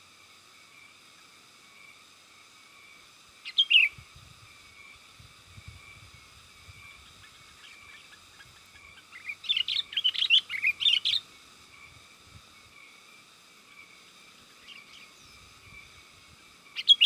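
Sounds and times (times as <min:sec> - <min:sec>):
bird chirping calls: 0:03.4 - 0:04.0, 0:06.9 - 0:11.3, 0:16.7 - 0:17.0.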